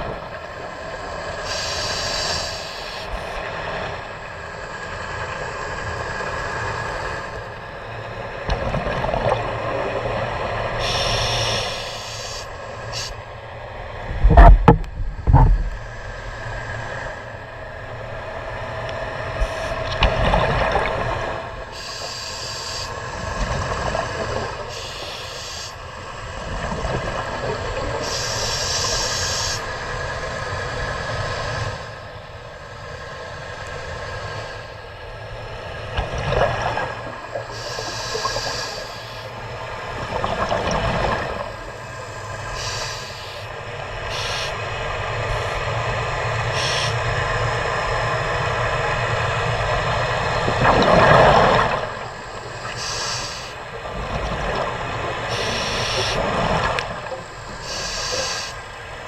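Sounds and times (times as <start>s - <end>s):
regulator breath hiss: 1.4s - 3.4s, 10.8s - 13.2s, 21.7s - 23.1s, 24.7s - 25.9s, 28.0s - 29.7s, 37.4s - 39.4s, 41.6s - 45.8s, 46.4s - 47.1s, 52.2s - 53.7s, 55.3s - 56.2s, 57.4s - 58.8s
exhaled bubbles gurgling: 8.1s - 13.1s, 19.4s - 25.6s, 35.9s - 58.8s
low steady rumble: 11.9s - 21.8s.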